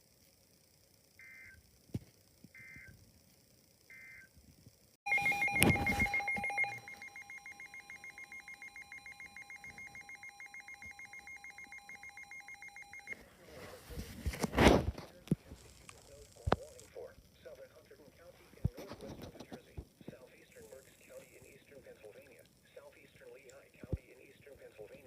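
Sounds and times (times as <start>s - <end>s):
data-burst chirps: 5.1s - 13.2s
pulsing multi-pitch alert tone: 5.1s - 13.2s.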